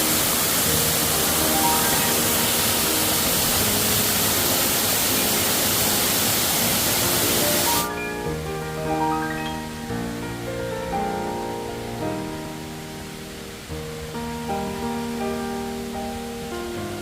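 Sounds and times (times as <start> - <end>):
gentle marimba music: 0.0 - 12.9
waterfall rushing: 0.0 - 17.0.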